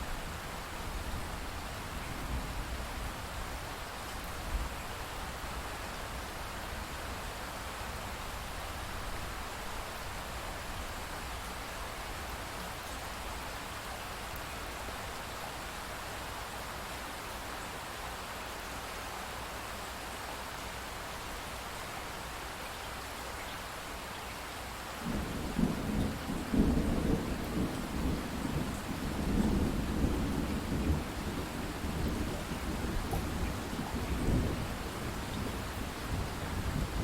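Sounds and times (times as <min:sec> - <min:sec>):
rain hiss: 0:00.0 - 0:37.0
rolling thunder rumble: 0:25.0 - 0:37.0.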